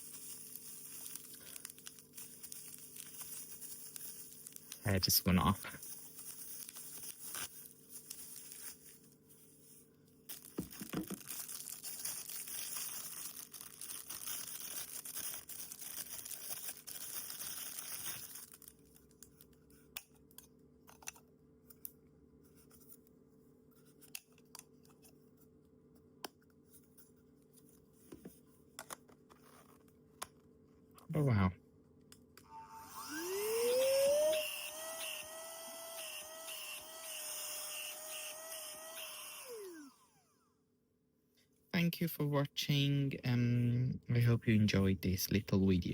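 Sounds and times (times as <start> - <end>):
packaging tearing and rustling: 0.0 - 9.2, 10.3 - 19.6.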